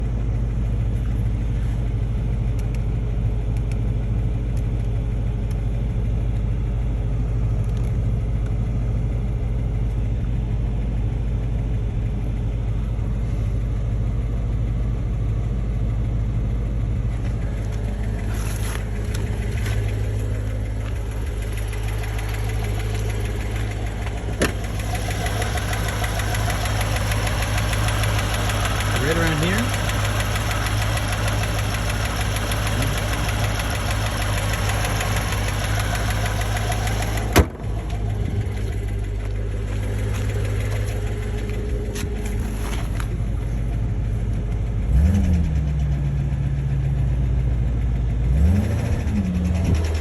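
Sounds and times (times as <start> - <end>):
car engine idling: 0.0 - 50.0
engine valvetrain ticking: 17.0 - 50.0.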